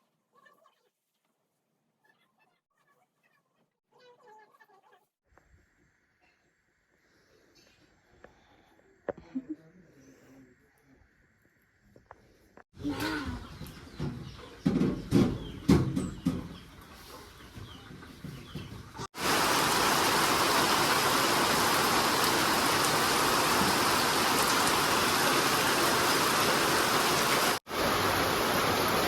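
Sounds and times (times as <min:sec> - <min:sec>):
steady rushing hiss: 0:19.2 - 0:29.0.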